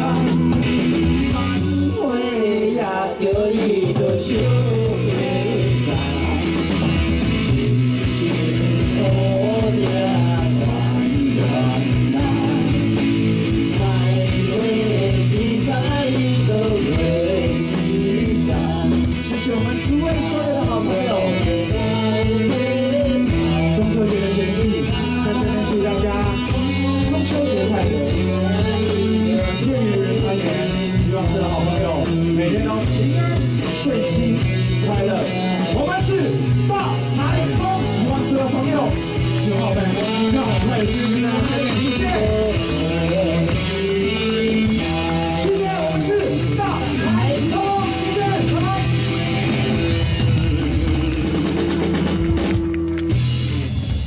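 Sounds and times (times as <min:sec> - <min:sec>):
electric guitar: 0:00.0 - 0:54.0
live rock band playing: 0:00.0 - 0:54.0.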